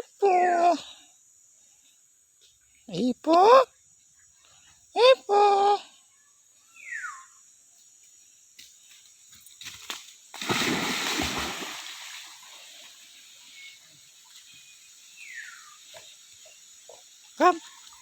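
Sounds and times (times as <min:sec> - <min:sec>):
splash in water: 0:09.8 - 0:13.2.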